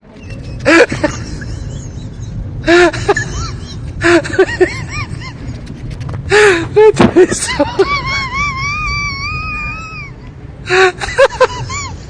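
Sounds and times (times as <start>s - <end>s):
person making wordless calls: 0.0s - 1.5s
steady noisy background: 0.0s - 12.0s.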